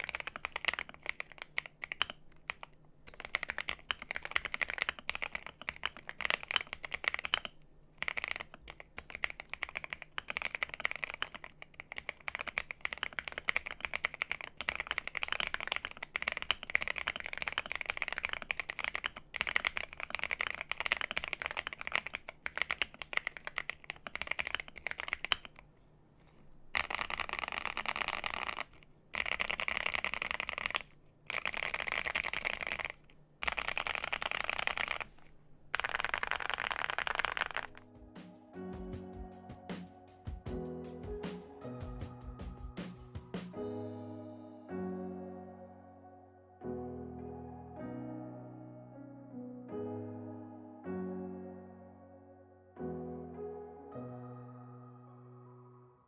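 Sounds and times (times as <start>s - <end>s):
mechanical keyboard typing: 0.0s - 25.6s, 26.7s - 37.9s.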